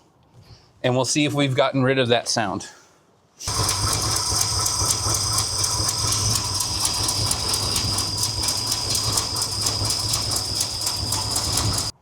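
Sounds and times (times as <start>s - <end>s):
engine idling: 3.5s - 12.0s
fast even valve ticking: 3.5s - 12.0s.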